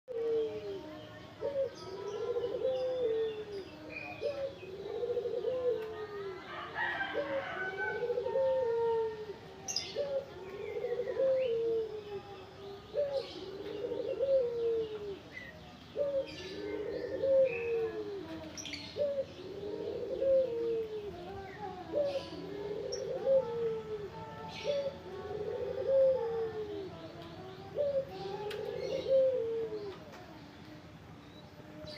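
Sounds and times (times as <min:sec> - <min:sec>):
dove cooing: 0:00.1 - 0:31.9.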